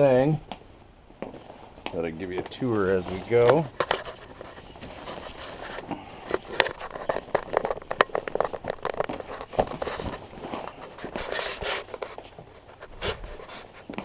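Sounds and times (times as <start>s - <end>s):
rustling: 0.4s - 14.0s
small clicks and knocks: 3.4s - 12.2s.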